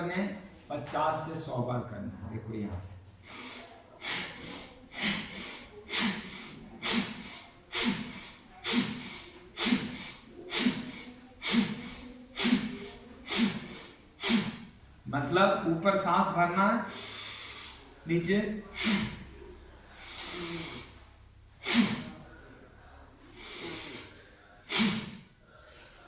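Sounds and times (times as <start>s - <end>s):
man breathing forcefully: 3.2s - 14.7s, 16.9s - 17.9s, 18.6s - 22.2s, 23.4s - 25.3s.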